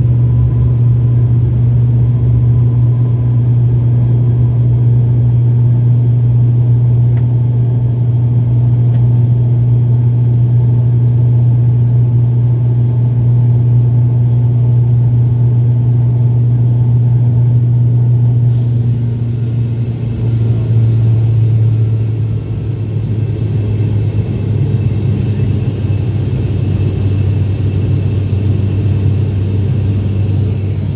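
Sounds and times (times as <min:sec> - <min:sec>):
airliner propellers droning: 0:00.0 - 0:30.9.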